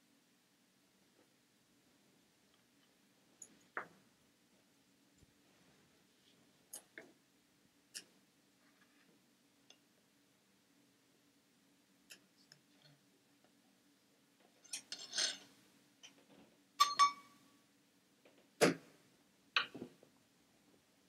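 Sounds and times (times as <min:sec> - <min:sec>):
utensils clinking against mixing bowl: 0:16.8 - 0:17.3.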